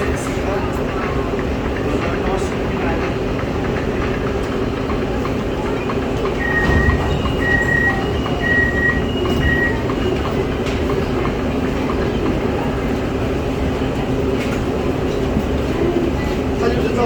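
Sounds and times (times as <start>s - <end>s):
train hum: 0.0s - 17.0s
door-closing warning beeps: 6.3s - 10.5s.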